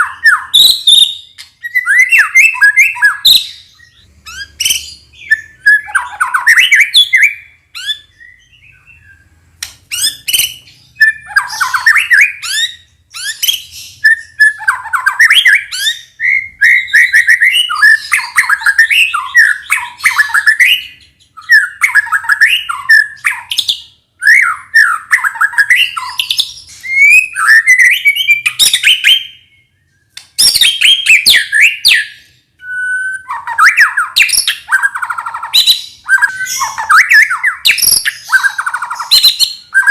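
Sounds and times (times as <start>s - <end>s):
bird singing varied phrases: 0.0s - 39.9s
sharp clicks: 9.6s - 9.9s.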